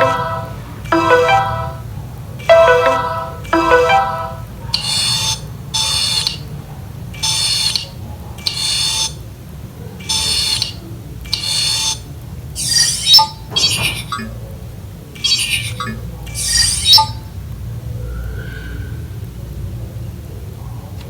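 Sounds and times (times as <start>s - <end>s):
bright electronic chime: 0.0s - 4.5s.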